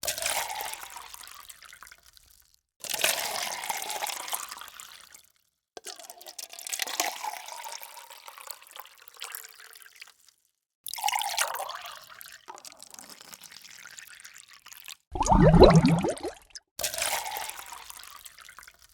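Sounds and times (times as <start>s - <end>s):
water pouring into a cup: 10.9s - 13.7s, 15.2s - 16.4s.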